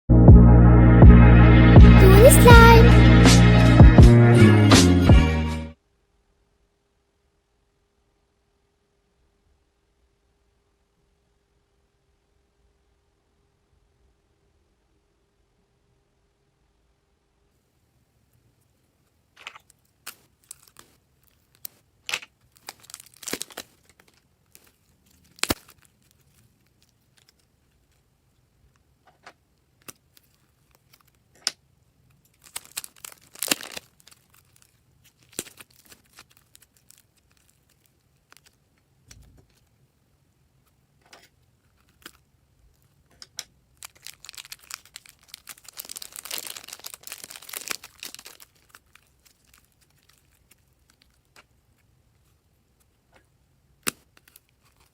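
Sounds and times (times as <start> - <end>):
slime crackling and tearing: 22.4 - 27.3, 32.3 - 38.6, 43.7 - 51.4.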